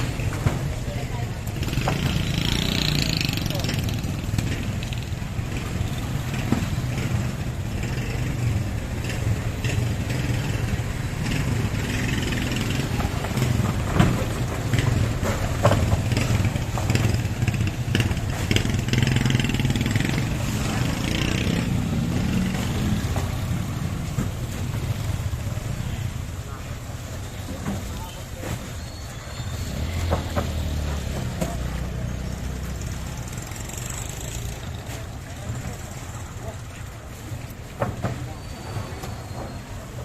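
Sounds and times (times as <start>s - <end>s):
distant voices: 0.0s - 40.0s
knocks and clatter: 1.5s - 25.4s.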